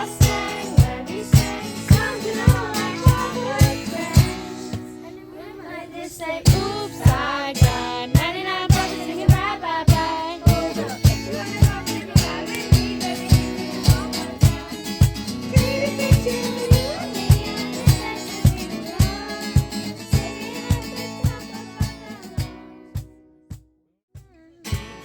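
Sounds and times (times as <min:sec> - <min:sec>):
band song with singing: 0:00.0 - 0:04.9, 0:06.4 - 0:22.5
kick drum beat: 0:00.0 - 0:04.9, 0:06.5 - 0:25.0.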